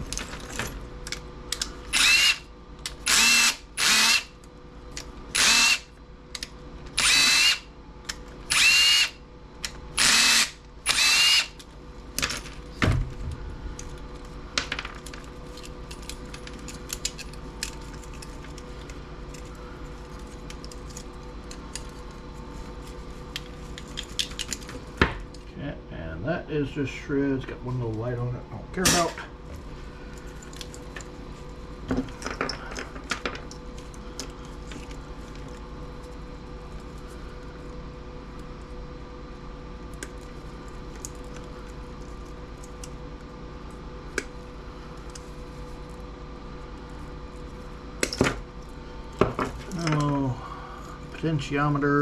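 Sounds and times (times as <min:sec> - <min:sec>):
power drill whining: 0:01.9 - 0:02.4, 0:03.1 - 0:04.3, 0:05.4 - 0:05.9, 0:07.0 - 0:07.6, 0:08.5 - 0:09.2, 0:10.0 - 0:11.6.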